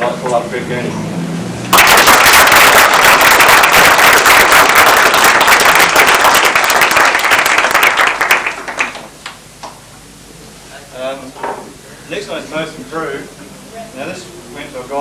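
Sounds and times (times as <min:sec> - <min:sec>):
audience clapping: 0:01.7 - 0:09.4.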